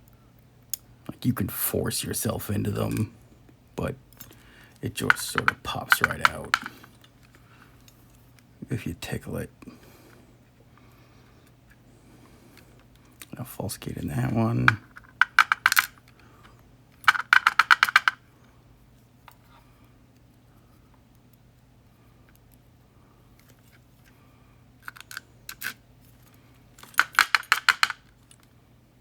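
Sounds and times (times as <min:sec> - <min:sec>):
small metal parts rattling: 0:05.0 - 0:07.0, 0:14.6 - 0:16.0, 0:17.0 - 0:18.2, 0:24.8 - 0:25.8, 0:26.8 - 0:28.4.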